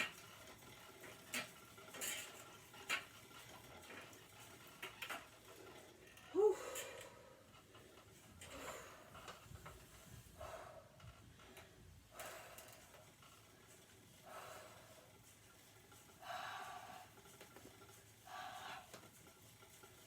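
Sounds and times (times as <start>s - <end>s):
person breathing rhythmically: 5.4s - 20.0s.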